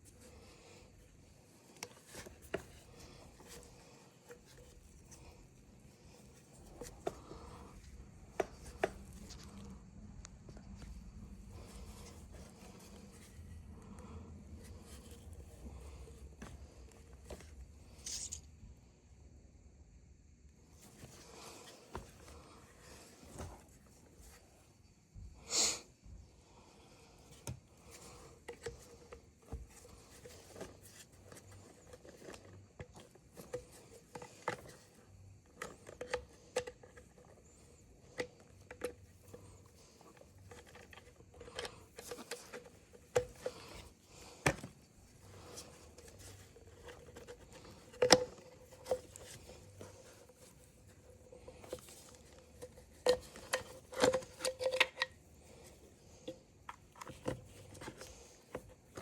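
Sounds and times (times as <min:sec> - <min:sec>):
faint steady hum: 0:00.0 - 0:59.0.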